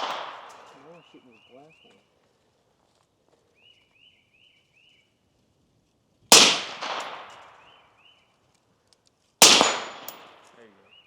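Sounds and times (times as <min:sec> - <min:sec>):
gunshots with long echo: 0:00.0 - 0:00.8, 0:06.3 - 0:07.6, 0:09.4 - 0:10.4.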